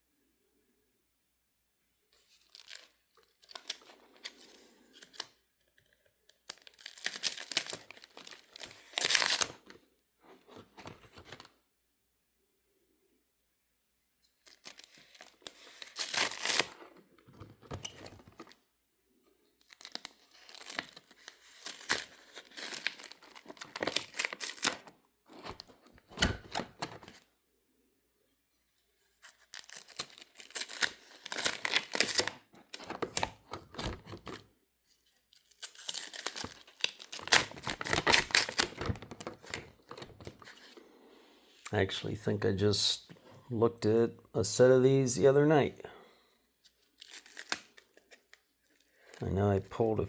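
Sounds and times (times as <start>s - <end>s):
card wrappers rustling and crinkling: 2.2s - 5.4s, 6.2s - 11.5s, 14.3s - 18.6s, 19.6s - 27.2s, 29.0s - 42.0s, 46.6s - 50.0s.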